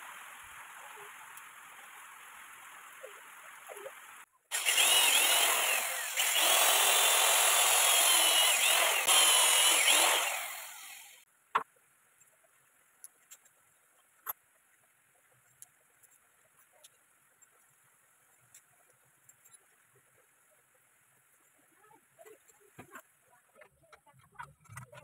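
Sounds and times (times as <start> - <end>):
soft steady hiss: 0.0 - 4.5, 11.2 - 24.0
power tool motor whining: 4.5 - 11.2.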